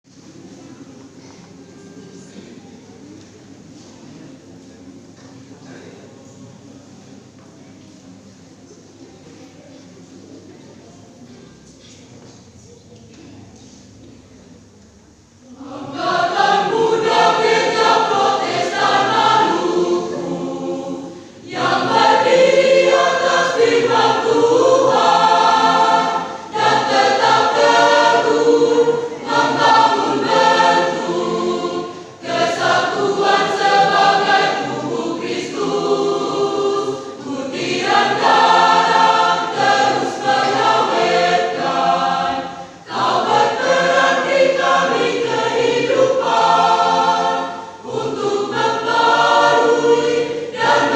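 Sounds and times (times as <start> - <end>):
church choir singing: 15.4 - 50.9.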